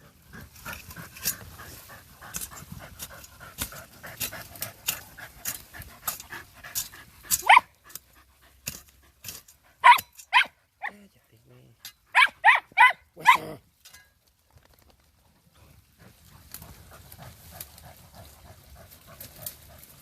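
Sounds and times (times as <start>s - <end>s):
dogs panting: 0.0s - 9.8s, 15.4s - 20.0s
dog yelp: 7.3s - 7.7s, 9.8s - 10.9s, 12.1s - 13.6s.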